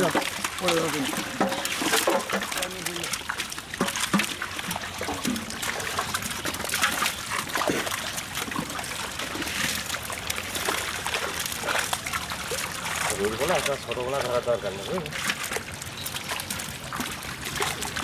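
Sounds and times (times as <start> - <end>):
pond water splashing and trickling: 0.0 - 18.0.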